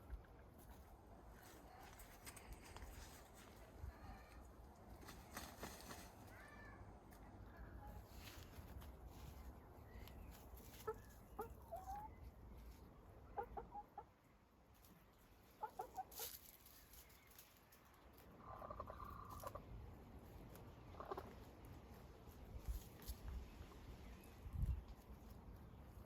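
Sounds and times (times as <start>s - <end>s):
hens clucking: 9.9s - 14.4s, 15.3s - 16.4s, 18.2s - 19.7s, 20.4s - 21.6s.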